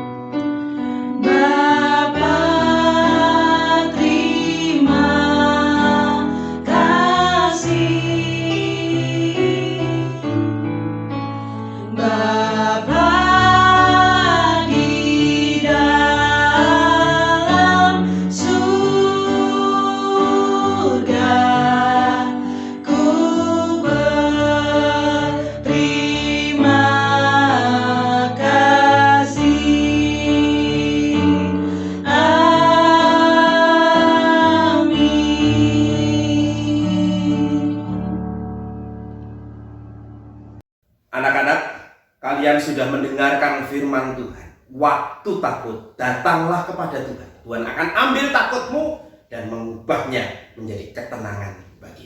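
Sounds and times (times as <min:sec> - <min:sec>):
person singing: 0:01.2 - 0:10.4, 0:11.8 - 0:38.1.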